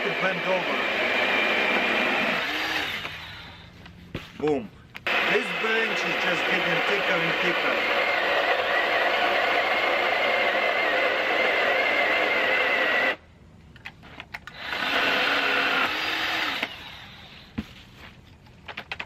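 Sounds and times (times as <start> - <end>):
electric chainsaw cutting wood: 0.0 - 3.7, 5.0 - 13.2, 14.5 - 17.5.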